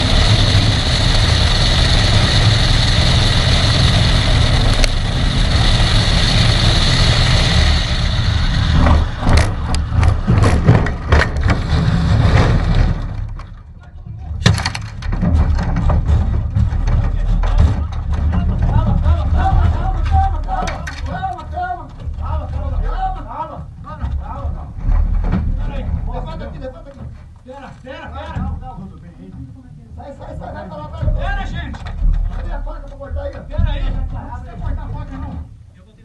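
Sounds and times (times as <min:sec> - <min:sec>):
aircraft engine running: 0:00.0 - 0:13.6
rattling: 0:00.0 - 0:28.8
clattering knocks: 0:08.7 - 0:22.9, 0:23.6 - 0:27.4.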